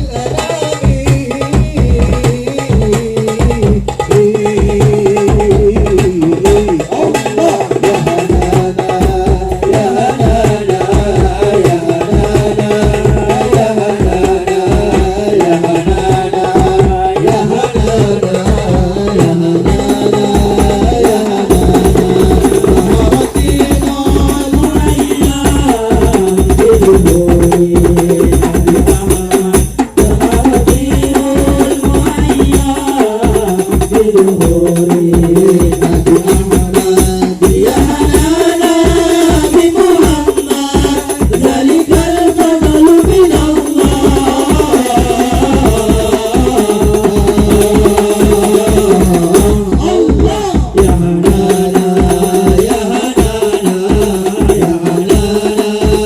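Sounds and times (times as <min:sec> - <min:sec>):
frame drums with jingles: 0:00.0 - 0:56.0.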